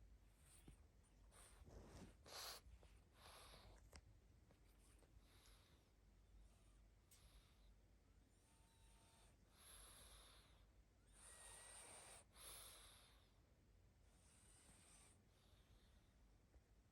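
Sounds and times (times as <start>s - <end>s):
dog snoring: 11.2s - 13.3s.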